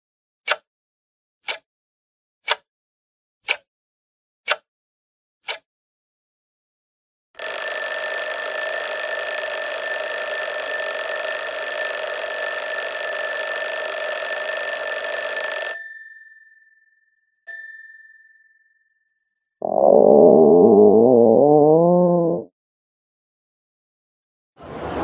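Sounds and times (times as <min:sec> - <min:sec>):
electric bell ringing: 0:07.4 - 0:16.6, 0:17.5 - 0:18.5.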